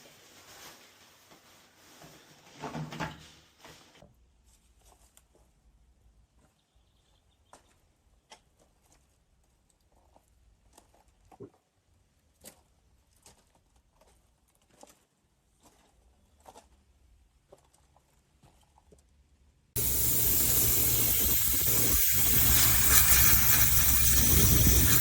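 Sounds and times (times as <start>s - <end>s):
rustle and rattle: 19.8s - 25.0s.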